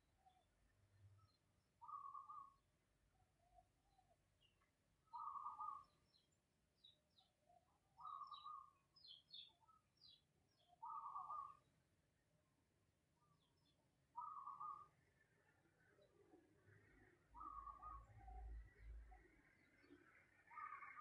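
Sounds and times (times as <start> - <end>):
faint high bird chirps: 0.0 - 11.8, 13.2 - 15.2, 17.0 - 21.0.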